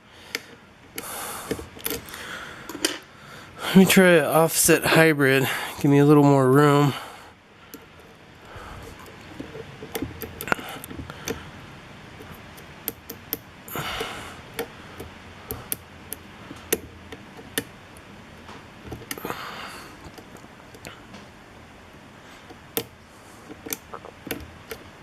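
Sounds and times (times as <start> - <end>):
lock pick metallic clicks: 0.3 - 3.0, 12.2 - 13.5, 22.5 - 24.9.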